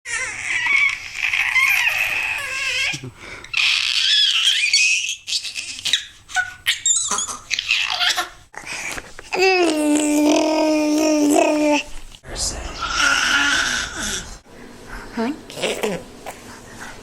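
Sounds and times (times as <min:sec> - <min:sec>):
baby squealing and fussing: 0:03.6 - 0:08.4.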